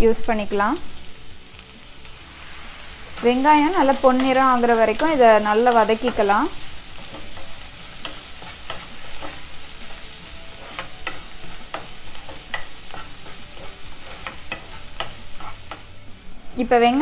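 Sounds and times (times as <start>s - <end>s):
shallots sizzling in oil: 0.0s - 17.0s
spatula clicking and scraping: 3.9s - 16.0s.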